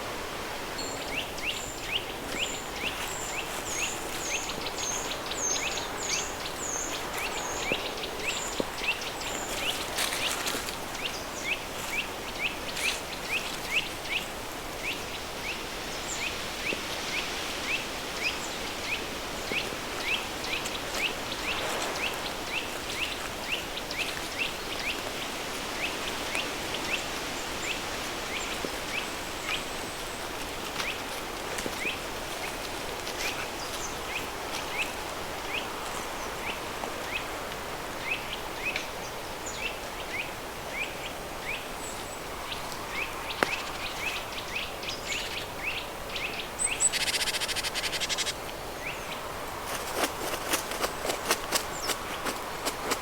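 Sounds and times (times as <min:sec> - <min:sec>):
bird chirping: 0:43.4 - 0:49.1.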